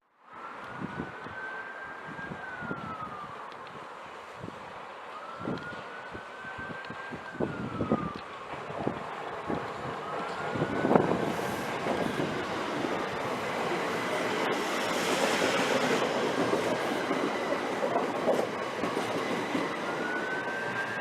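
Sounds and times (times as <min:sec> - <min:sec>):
distant siren wailing: 0:00.2 - 0:21.0
train knocks and rumble: 0:08.4 - 0:20.8.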